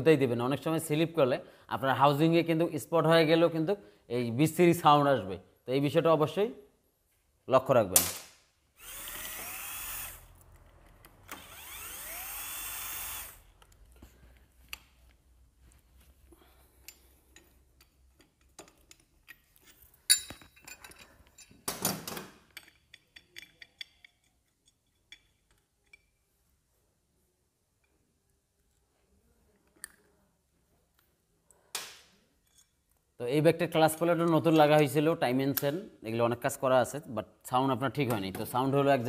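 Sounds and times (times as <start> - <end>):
power tool spinning up: 8.8 - 13.6
metallic clicks and knocks: 16.9 - 26.2.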